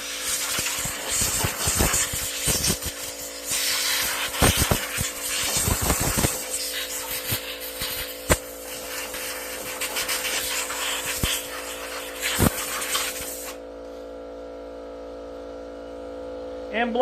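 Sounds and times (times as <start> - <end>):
compressed air hissing from nozzle: 0.0 - 13.6
steady hum: 0.0 - 17.0.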